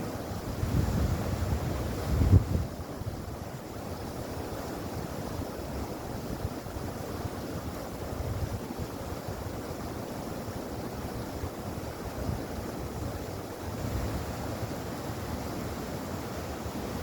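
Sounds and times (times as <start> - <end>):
stream water rushing: 0.0 - 17.0
wind buffeting microphone: 0.5 - 3.4.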